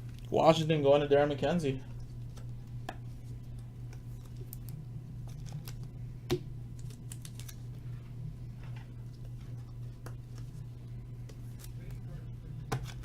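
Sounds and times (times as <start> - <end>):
low electrical hum: 0.0 - 13.0
cards clicking and flicking: 3.6 - 7.7.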